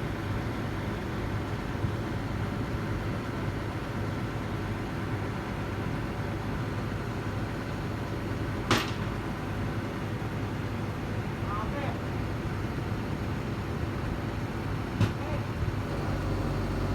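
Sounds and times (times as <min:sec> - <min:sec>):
low machinery hum: 0:15.7 - 0:16.9.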